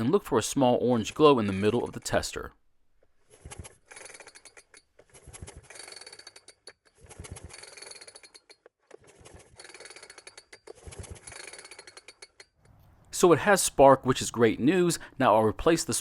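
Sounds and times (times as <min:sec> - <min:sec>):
chainsaw starter rope pulled: 0:03.2 - 0:12.8
engine cranking with rattling clicks: 0:03.5 - 0:12.8.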